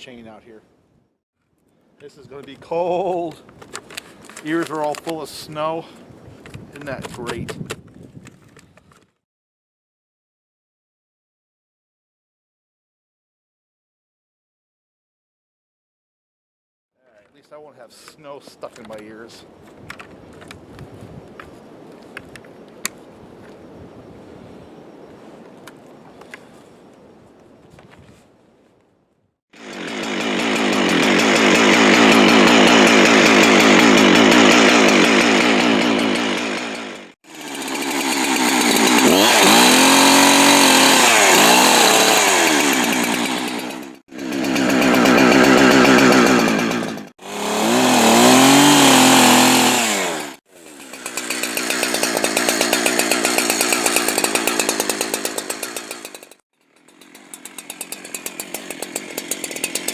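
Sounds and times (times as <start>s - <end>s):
chainsaw cutting wood: 2.4s - 5.3s, 6.5s - 8.6s, 29.5s - 59.9s.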